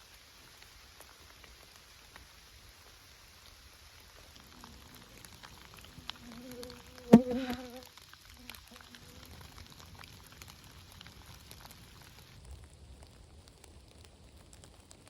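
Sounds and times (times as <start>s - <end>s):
raindrops pattering: 0.0s - 15.0s
flying insect buzzing: 6.1s - 9.2s.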